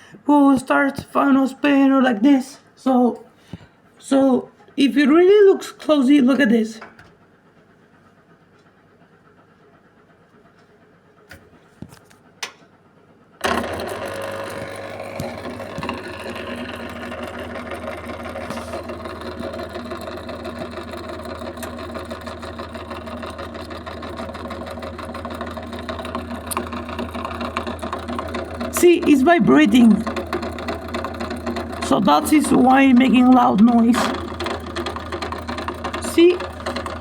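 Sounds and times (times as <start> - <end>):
drain pump humming and rattling: 13.4 - 37.0.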